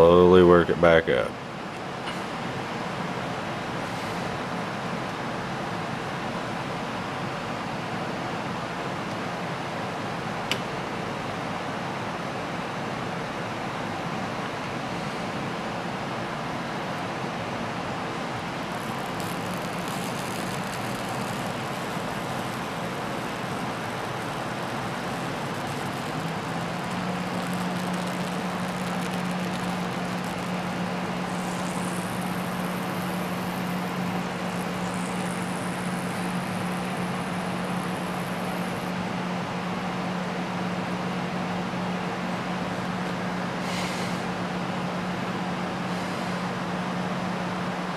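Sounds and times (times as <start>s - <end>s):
sharp click: 10.5s - 10.7s
distorted buzz from phone speaker: 17.8s - 39.1s, 43.6s - 44.4s.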